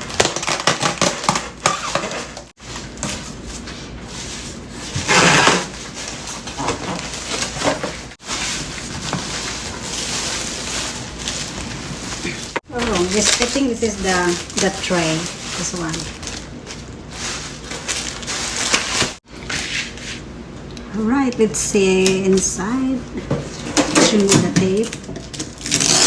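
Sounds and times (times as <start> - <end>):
packaging rustling: 0.0 - 19.2, 23.6 - 26.0.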